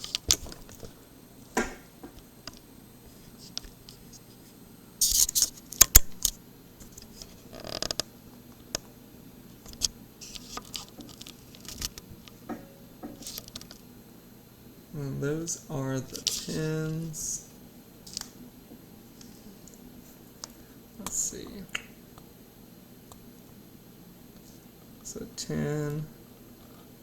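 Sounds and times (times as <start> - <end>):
metal parts scraping: 5.0 - 5.5
rustling and clicking: 9.6 - 12.4.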